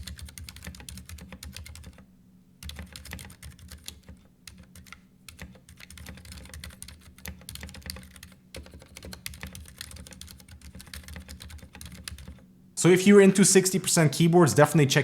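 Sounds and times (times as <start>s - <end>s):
mechanical keyboard typing: 0.0s - 2.0s, 2.6s - 12.4s.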